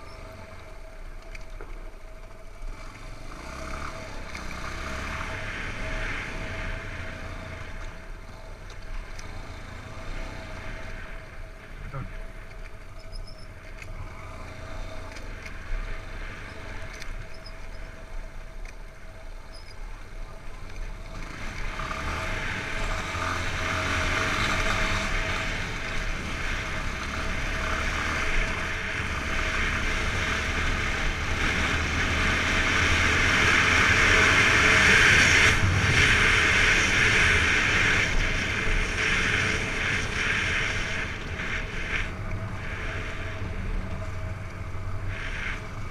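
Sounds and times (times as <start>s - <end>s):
motorcycle engine running: 0.0s - 45.9s
wind rushing over microphone: 22.2s - 45.9s.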